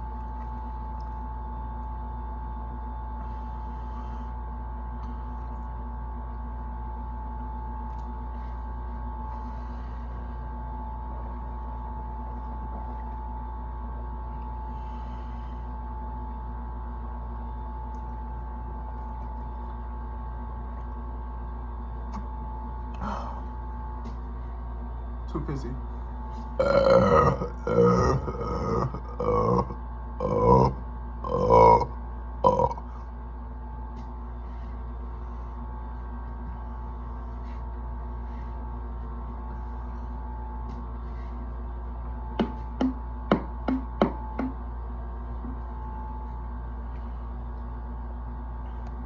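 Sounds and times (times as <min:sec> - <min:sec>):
steady hum with high tone: 0:00.0 - 0:49.0.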